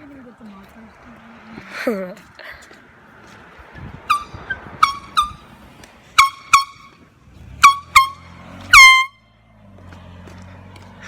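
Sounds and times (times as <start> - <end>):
air horn toots: 4.0 - 9.4.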